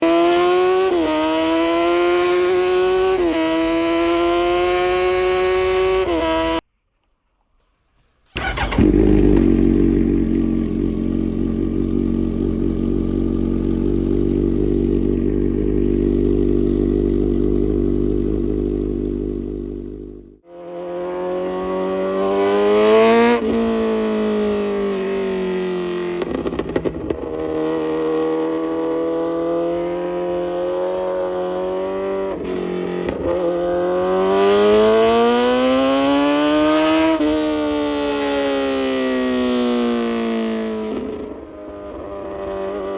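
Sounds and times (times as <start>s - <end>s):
motorcycle engine accelerating: 0.0s - 6.6s, 8.3s - 42.9s.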